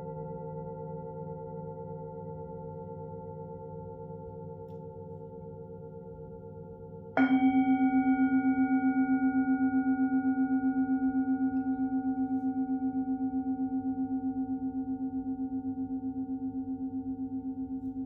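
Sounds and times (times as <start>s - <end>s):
singing bowl ringing: 4.4s - 18.0s.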